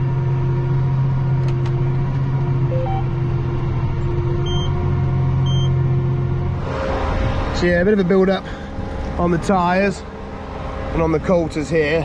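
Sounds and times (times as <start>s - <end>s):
tractor engine running: 0.0s - 12.0s
short electronic beeps: 2.7s - 3.1s, 4.4s - 4.8s, 5.4s - 5.8s.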